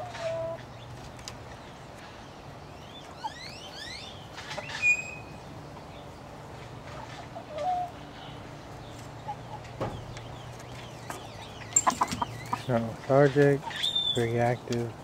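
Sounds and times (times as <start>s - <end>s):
hens chirping trills: 0.0s - 15.0s
hen low cluck: 11.7s - 13.0s.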